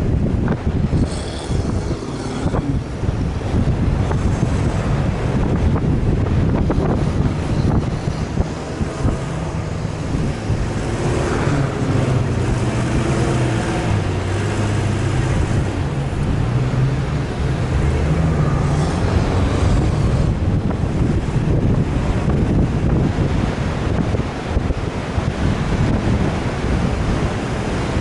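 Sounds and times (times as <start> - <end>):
off-road vehicle engine running: 0.0 - 28.0
wind noise: 0.0 - 28.0.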